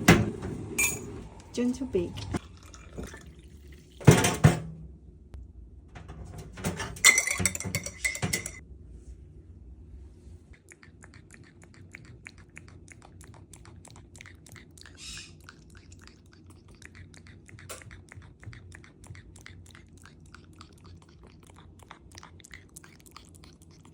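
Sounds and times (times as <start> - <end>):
parrot beak clicks and crunches: 10.6 - 23.9.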